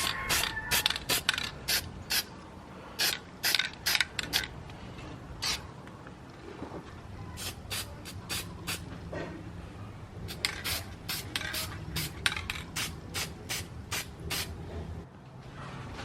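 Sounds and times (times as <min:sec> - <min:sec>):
spray can hissing bursts: 0:00.0 - 0:02.3, 0:03.0 - 0:04.3, 0:07.4 - 0:08.9, 0:10.3 - 0:14.6.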